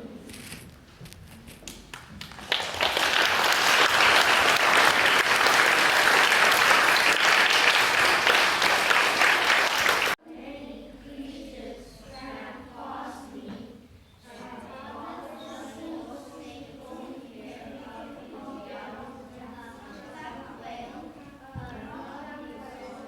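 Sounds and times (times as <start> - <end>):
children applauding: 1.9 - 10.2.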